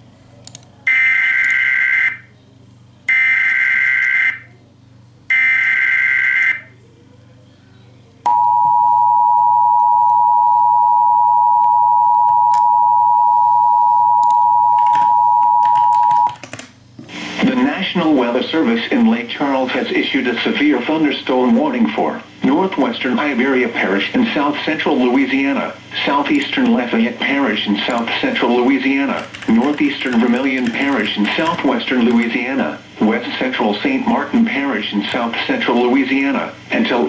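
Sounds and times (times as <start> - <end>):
two-tone attention signal: 8.3 - 16.3.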